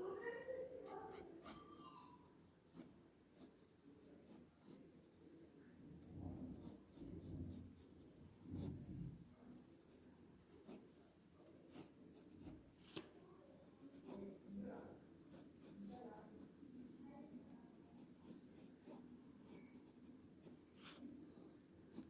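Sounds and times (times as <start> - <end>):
sketching strokes on paper: 0.8 - 5.3, 6.0 - 8.8, 9.6 - 12.6, 13.8 - 16.5, 17.7 - 21.1.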